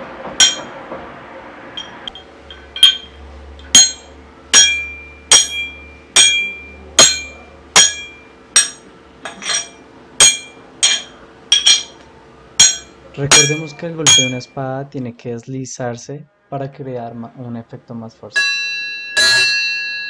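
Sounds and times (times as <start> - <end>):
hammer striking metal tools: 0.4 - 0.8, 1.8 - 12.0, 12.6 - 14.4, 19.2 - 19.8.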